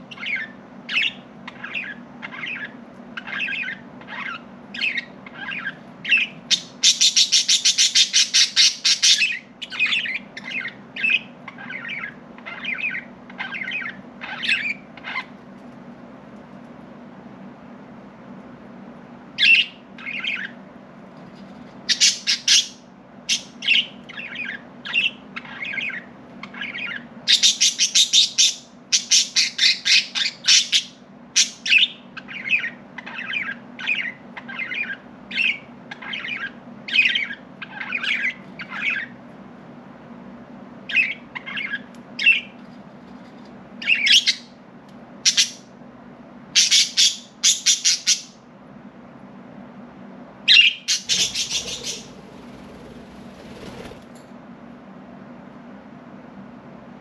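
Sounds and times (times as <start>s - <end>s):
budgerigars chirping: 0.1s - 15.3s, 19.4s - 20.6s, 21.9s - 39.2s, 40.9s - 42.6s, 43.8s - 44.5s, 45.2s - 45.7s, 46.6s - 48.4s, 50.5s - 54.0s.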